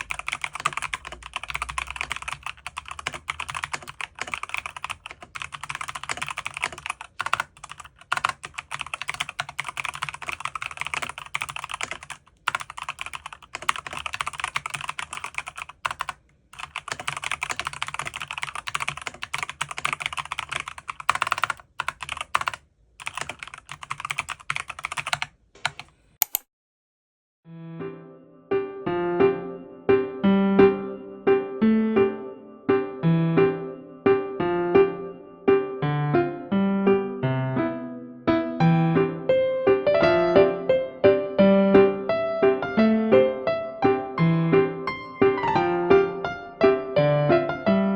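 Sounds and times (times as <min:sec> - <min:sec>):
typing on mechanical keyboard: 0:00.0 - 0:26.4.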